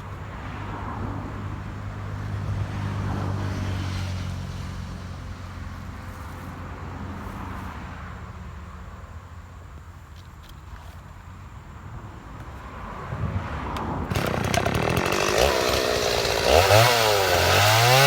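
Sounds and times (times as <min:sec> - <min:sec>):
engine running: 0:14.1 - 0:18.0.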